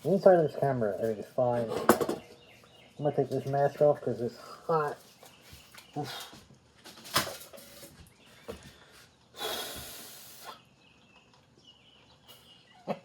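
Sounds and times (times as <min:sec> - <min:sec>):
loud hiss: 0:09.4 - 0:10.6.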